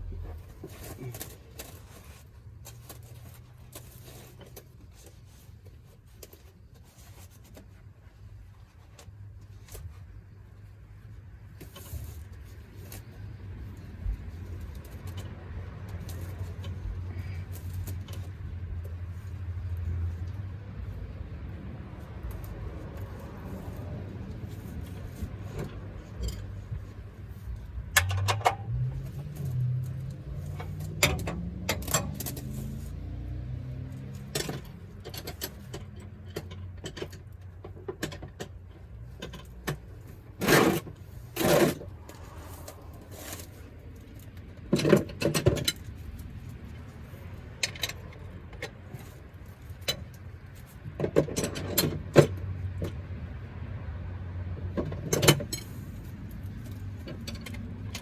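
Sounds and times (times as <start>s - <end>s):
metal tools clinking and clanking: 22.3s - 32.9s, 33.9s - 46.7s, 47.4s - 52.4s, 54.8s - 58.0s.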